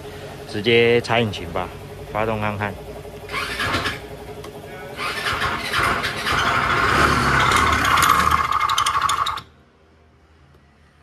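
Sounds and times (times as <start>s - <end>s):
scooter engine clattering: 2.9s - 9.5s.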